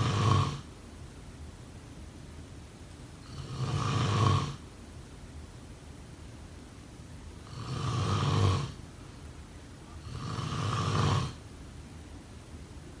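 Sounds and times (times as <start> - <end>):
person snoring: 0.0 - 0.6, 7.5 - 8.8, 10.0 - 11.4.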